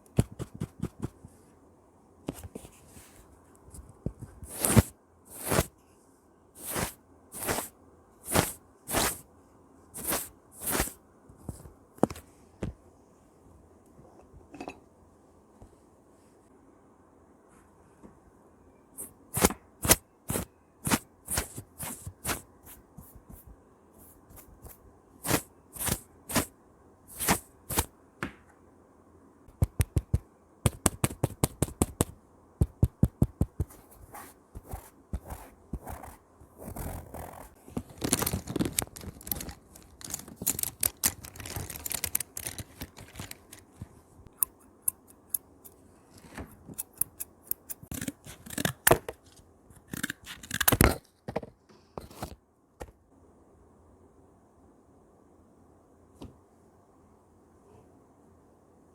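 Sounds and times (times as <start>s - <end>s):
paintbrush strokes: 6.6s - 9.2s, 10.0s - 11.0s, 33.5s - 37.6s.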